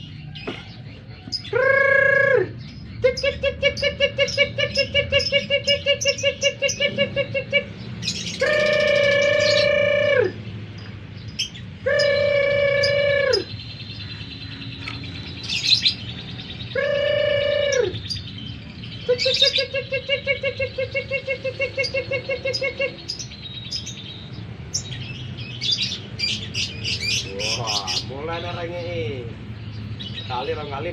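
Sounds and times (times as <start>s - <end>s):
bird chirping high notes: 7.8s - 9.8s.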